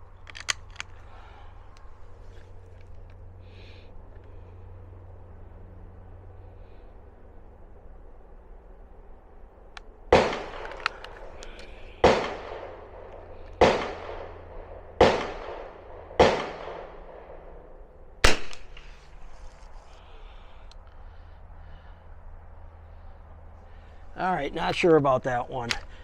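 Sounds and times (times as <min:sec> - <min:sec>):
rifle shots echoing: 0:10.1 - 0:19.2.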